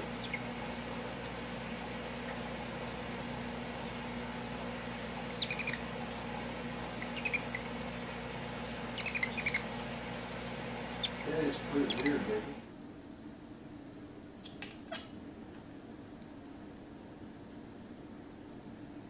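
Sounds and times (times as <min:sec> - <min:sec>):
steady low hum: 0:00.0 - 0:19.0
small animal chirping: 0:00.2 - 0:00.5, 0:05.4 - 0:05.9, 0:06.9 - 0:07.8, 0:08.9 - 0:09.7, 0:11.0 - 0:12.2.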